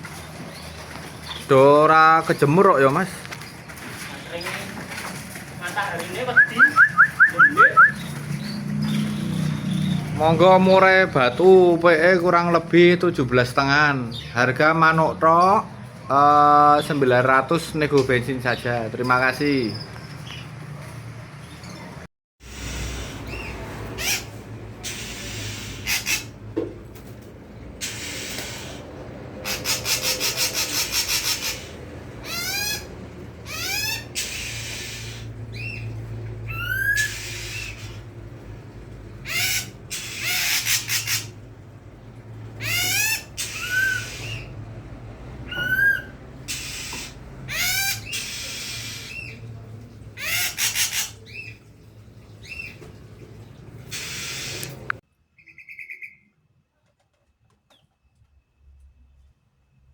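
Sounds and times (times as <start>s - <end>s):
harsh rasping bird calls: 0.0s - 26.6s, 27.5s - 56.3s
songbirds chirping: 0.0s - 56.6s
bird rattling trill: 29.4s - 32.9s.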